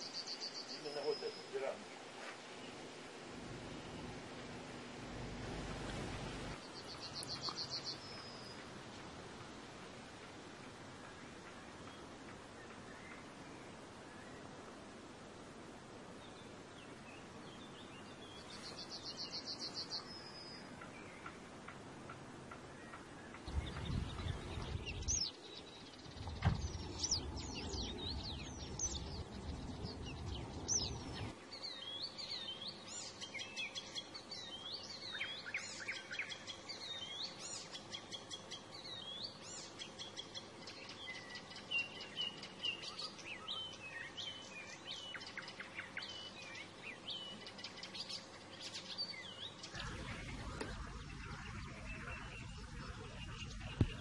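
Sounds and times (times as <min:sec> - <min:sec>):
small birds chirping and singing: 0:00.0 - 0:09.0, 0:16.1 - 0:54.0
low rumble: 0:03.3 - 0:06.6, 0:49.7 - 0:54.0.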